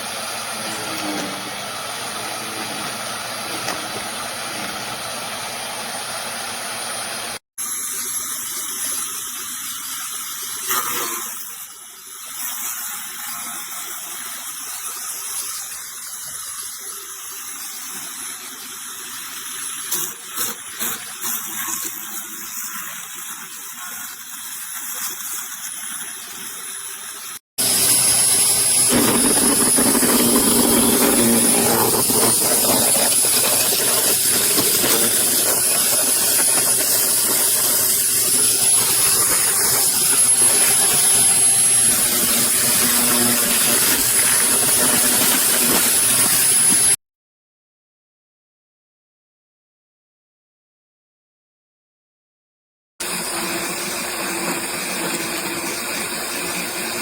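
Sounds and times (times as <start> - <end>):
wood chipper motor whining: 0.0 - 7.4, 27.6 - 47.0.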